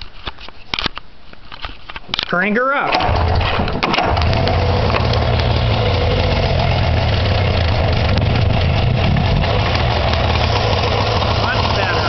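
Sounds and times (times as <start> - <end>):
snowmobile engine running: 4.0 - 12.0.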